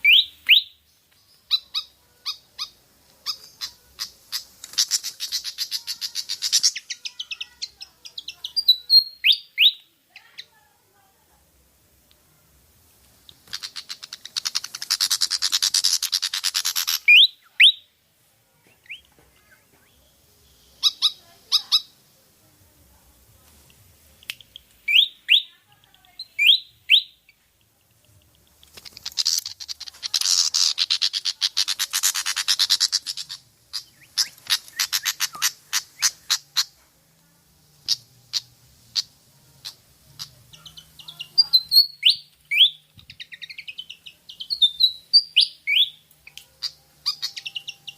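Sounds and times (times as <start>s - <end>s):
bird harsh chattering: 0.0s - 0.8s, 1.4s - 10.6s, 13.3s - 17.9s, 20.7s - 22.0s, 28.3s - 36.8s, 37.8s - 47.9s
bird squeaky upsweeping notes: 18.8s - 22.0s, 37.8s - 47.9s.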